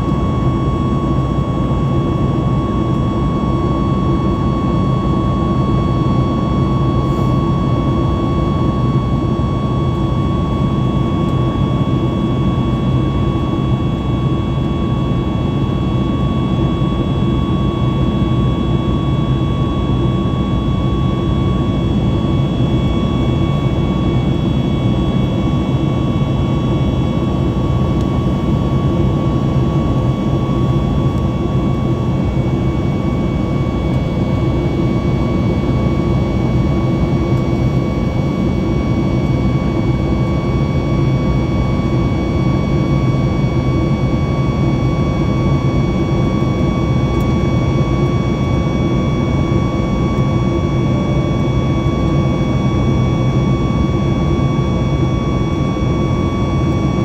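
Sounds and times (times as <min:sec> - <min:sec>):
airplane cabin engine roar: 0:00.0 - 0:57.0
thin whine: 0:00.0 - 0:57.0.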